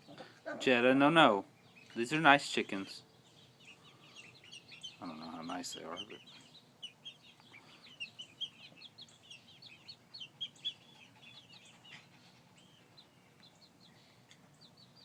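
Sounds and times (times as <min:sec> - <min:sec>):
chicks peeping: 0:00.0 - 0:15.0.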